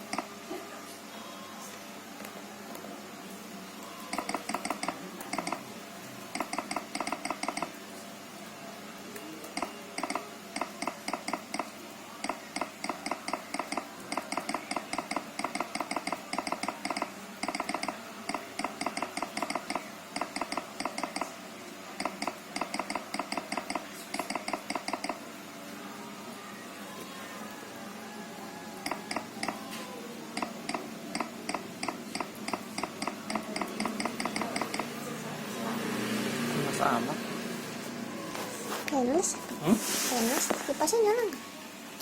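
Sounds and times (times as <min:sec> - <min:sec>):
laptop keyboard typing: 0:00.0 - 0:00.3, 0:04.1 - 0:05.7, 0:06.3 - 0:07.8, 0:09.4 - 0:21.4, 0:22.0 - 0:25.2, 0:28.8 - 0:29.6, 0:30.4 - 0:35.0.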